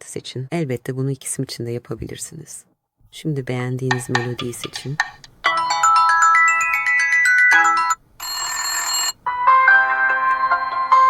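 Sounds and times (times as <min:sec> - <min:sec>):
phone ringtone melodies: 0:05.5 - 0:11.0.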